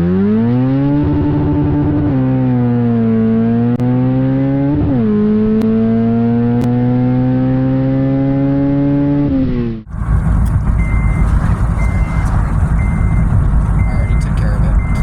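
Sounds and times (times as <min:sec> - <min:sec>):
car engine revving: 0:00.0 - 0:15.0
heavy low rumble: 0:09.8 - 0:15.0
short high beeps: 0:10.8 - 0:15.0.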